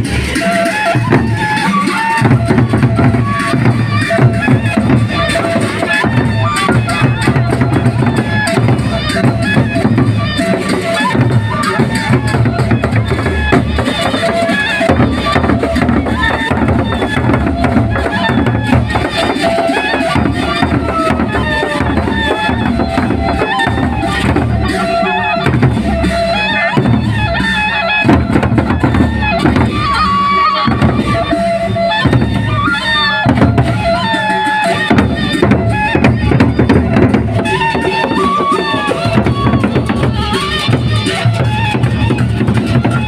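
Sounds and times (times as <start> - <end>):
large drums beating: 0.0 - 43.0
wavering high melody: 0.0 - 43.0.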